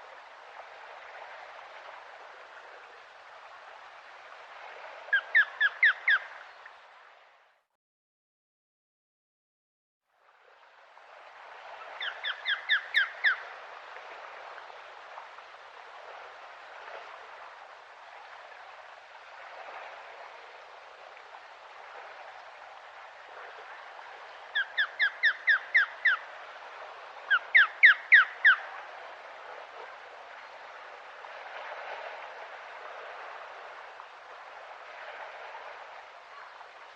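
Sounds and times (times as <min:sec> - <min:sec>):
outdoor background hiss: 0:00.0 - 0:07.7, 0:10.1 - 0:36.9
osprey whistled calls: 0:05.1 - 0:06.3, 0:12.0 - 0:13.5, 0:24.5 - 0:26.2, 0:27.3 - 0:28.6.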